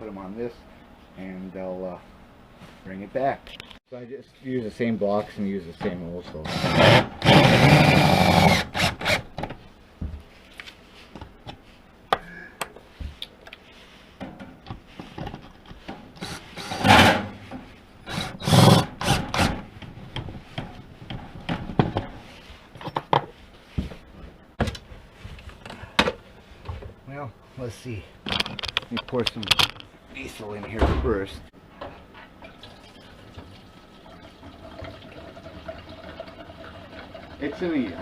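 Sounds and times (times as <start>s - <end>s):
tool scraping wood: 16.2s - 17.4s.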